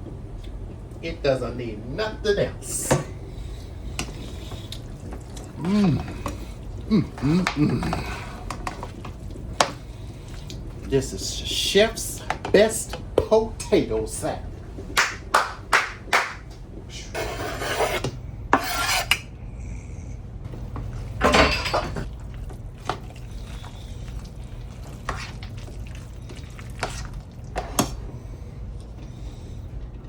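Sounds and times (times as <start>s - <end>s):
spoon scraping in a bowl: 17.1s - 19.2s.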